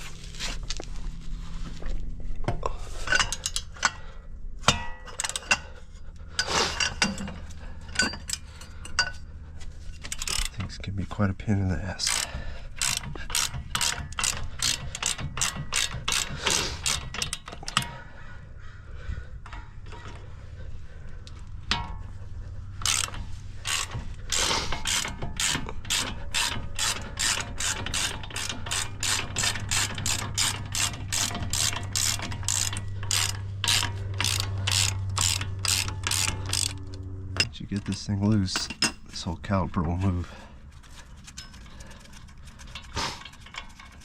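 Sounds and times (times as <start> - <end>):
ratchet wrench clicking: 10.1 - 10.6, 12.0 - 17.9, 22.8 - 39.0.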